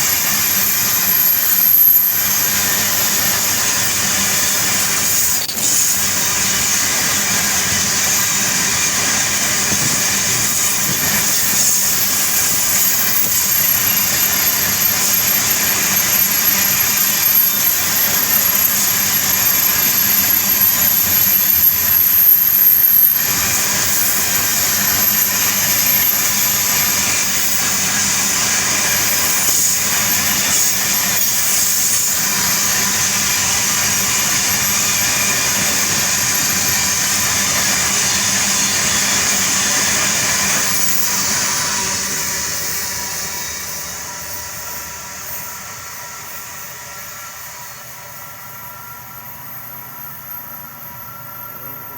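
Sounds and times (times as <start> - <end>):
high wheel squeal: 0.0 - 51.9
train wheels rushing on rail: 0.0 - 51.9.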